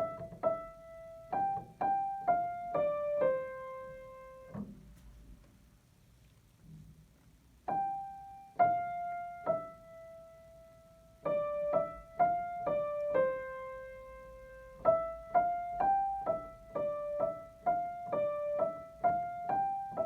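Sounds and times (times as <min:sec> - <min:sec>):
simple piano melody: 0:00.0 - 0:05.9, 0:06.6 - 0:20.0.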